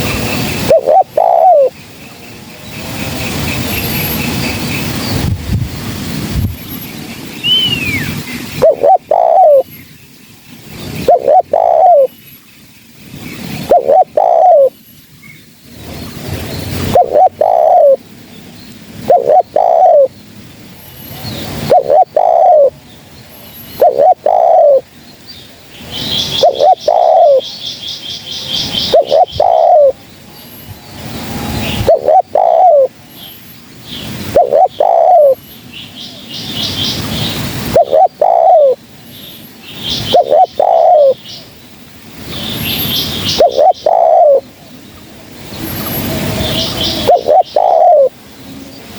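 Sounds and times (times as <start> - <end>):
bird high trill: 0.0 - 1.8, 7.4 - 9.9, 25.9 - 30.0, 31.2 - 33.0, 33.9 - 35.4, 36.1 - 38.8, 39.7 - 41.5, 42.3 - 44.5, 45.6 - 48.2
dove cooing: 0.0 - 1.8, 7.5 - 9.7, 10.9 - 12.1, 13.4 - 14.8, 16.2 - 18.0, 19.0 - 20.1, 21.4 - 22.8, 23.7 - 24.9, 26.1 - 27.5, 28.6 - 30.0, 31.5 - 33.0, 34.1 - 35.4, 37.6 - 38.8, 39.8 - 41.2, 43.2 - 44.5, 46.0 - 48.2.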